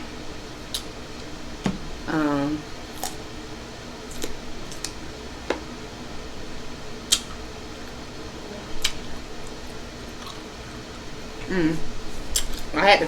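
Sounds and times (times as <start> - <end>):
faint steady hum: 0.0 - 13.0
wet eating clicks and smacks: 0.7 - 1.3, 4.1 - 5.7, 7.1 - 7.4, 8.8 - 9.1, 12.3 - 12.7.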